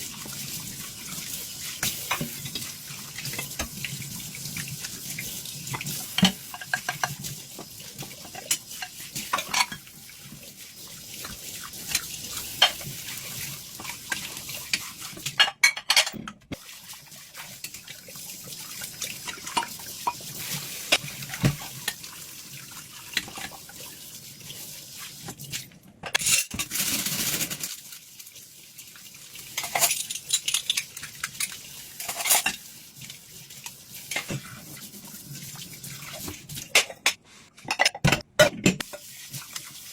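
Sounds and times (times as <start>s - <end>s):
dishes and cutlery clinking: 8.2s - 9.9s, 11.9s - 12.9s, 15.2s - 16.4s, 26.0s - 26.7s, 29.6s - 32.6s, 36.6s - 38.9s.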